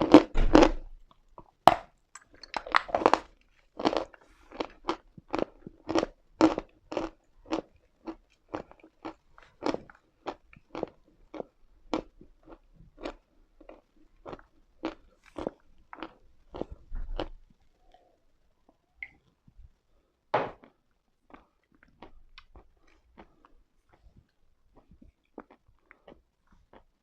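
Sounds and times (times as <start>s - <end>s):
chewing chalk crunches: 2.2s - 17.4s.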